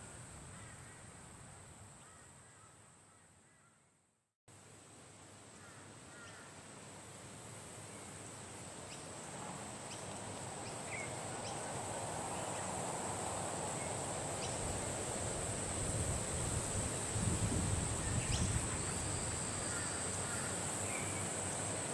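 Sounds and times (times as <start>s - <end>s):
wind blowing: 11.9s - 21.9s.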